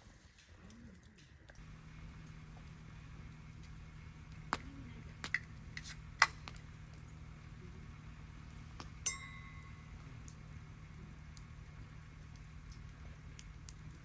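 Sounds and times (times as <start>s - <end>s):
steady low hum: 1.6s - 14.0s
tableware clinking: 9.0s - 9.8s.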